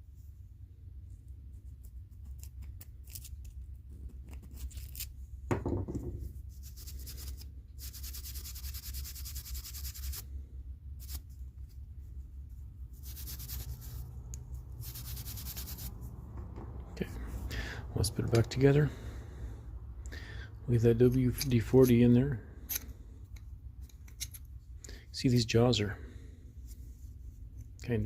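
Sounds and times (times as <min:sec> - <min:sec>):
knock: 0:05.5 - 0:06.2.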